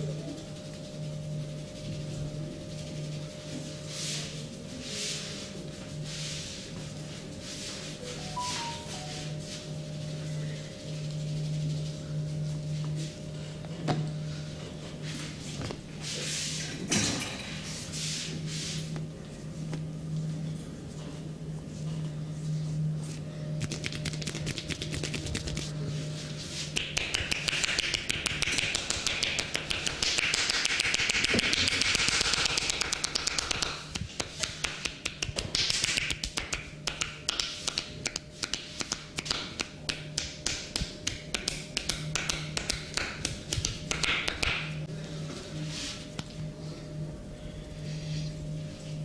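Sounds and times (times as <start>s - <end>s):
hands slapping skin: 23.6s - 25.7s, 26.8s - 44.7s.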